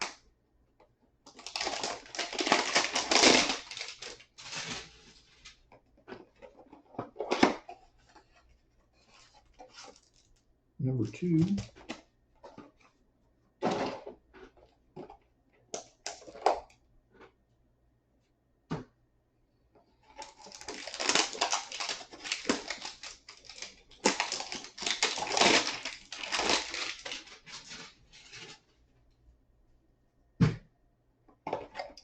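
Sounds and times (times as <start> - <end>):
packaging crinkling and tearing: 1.3 - 5.7, 9.1 - 10.4, 20.2 - 28.4.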